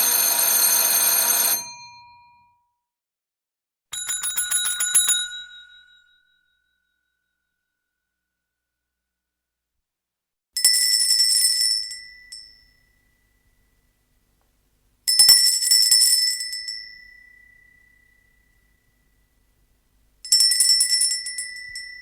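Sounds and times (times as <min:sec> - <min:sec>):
small high-pitched bell trilling: 0:20.2 - 0:22.0.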